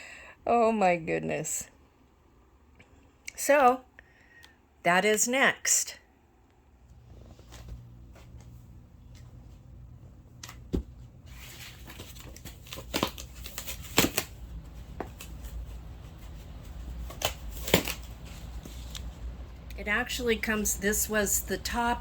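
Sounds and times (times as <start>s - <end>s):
steady low hum: 6.0s - 22.0s
cardboard rustling and scraping: 10.8s - 19.2s.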